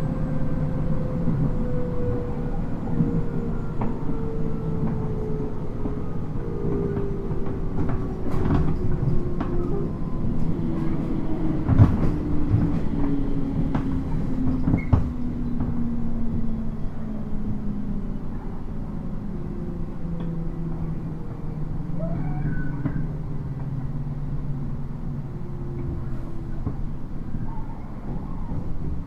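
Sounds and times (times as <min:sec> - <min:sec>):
train wheel and track rumble: 0:00.0 - 0:29.0
knocks and clacks from rails: 0:05.8 - 0:16.6, 0:22.0 - 0:24.0, 0:25.8 - 0:29.0.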